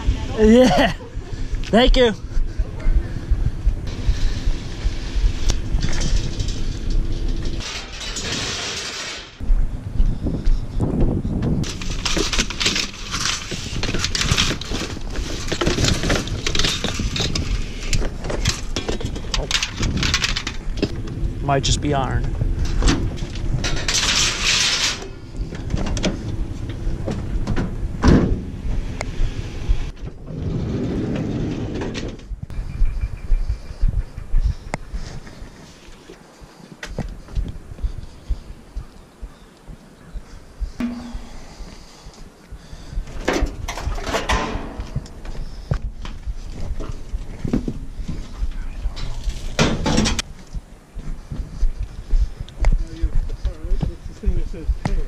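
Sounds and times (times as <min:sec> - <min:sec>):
vehicle low rumble with hiss: 0:02.3 - 0:07.6
scrap metal knocking and scraping: 0:03.9 - 0:09.4, 0:11.6 - 0:21.0, 0:22.6 - 0:28.5, 0:40.8 - 0:42.1, 0:43.2 - 0:45.4.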